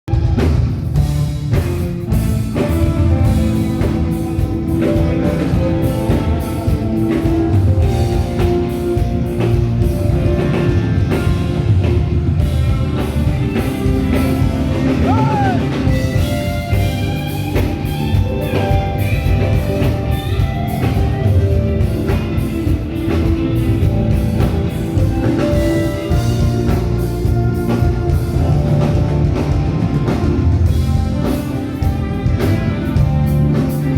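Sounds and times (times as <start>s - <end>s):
rock band playing: 0.1s - 33.9s.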